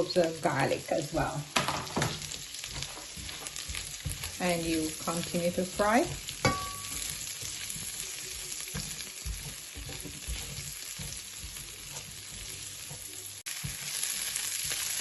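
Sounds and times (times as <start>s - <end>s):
onion sizzling in hot oil: 0.0s - 15.0s
utensil stirring and knocking pan: 0.0s - 15.0s.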